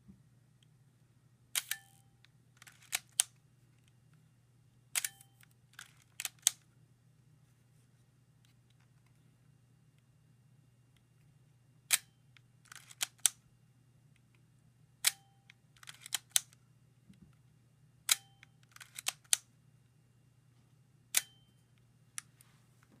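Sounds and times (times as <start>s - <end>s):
camera shutter clicking: 1.6s - 2.0s.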